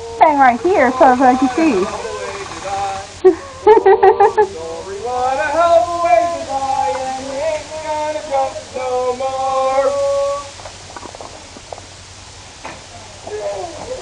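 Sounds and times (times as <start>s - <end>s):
person singing wordless tune: 0.0s - 2.0s, 2.6s - 10.6s.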